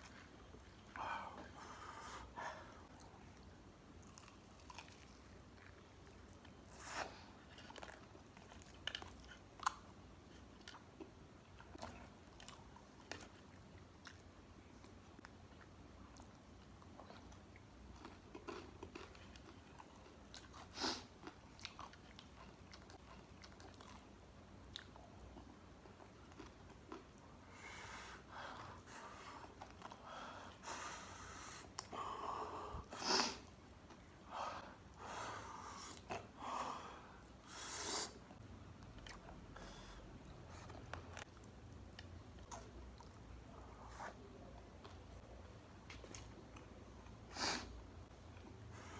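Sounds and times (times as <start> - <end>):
person chewing crispy food: 4.0 - 6.6, 7.5 - 14.2, 15.2 - 27.2.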